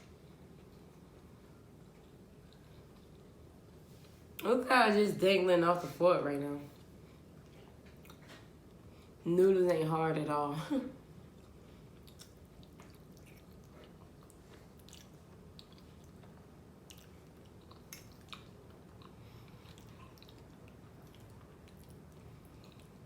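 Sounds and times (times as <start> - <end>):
chewing soft noodles: 0.1 - 4.4, 11.2 - 23.0.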